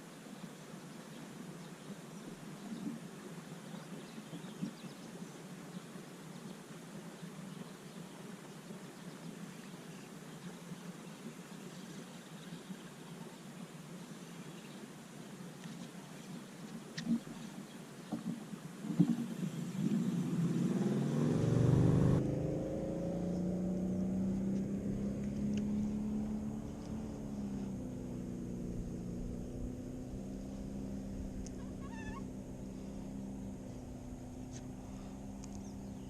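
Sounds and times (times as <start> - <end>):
boat motor speeding up: 18.2 - 36.0.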